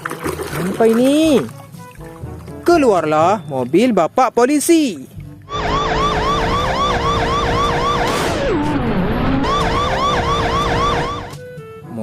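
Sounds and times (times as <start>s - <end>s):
police siren warbling: 5.5s - 11.4s.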